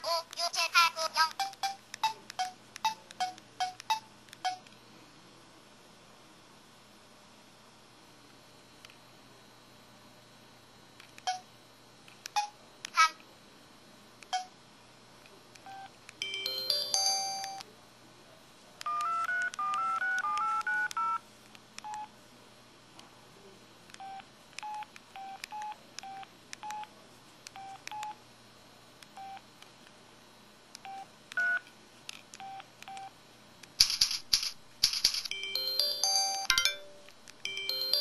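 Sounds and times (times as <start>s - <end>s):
beeping melody: 16.2s - 17.6s, 35.3s - 38.0s
bright chime: 16.2s - 17.6s, 35.3s - 38.0s
electronic phone jingle: 16.2s - 17.6s, 35.3s - 38.0s.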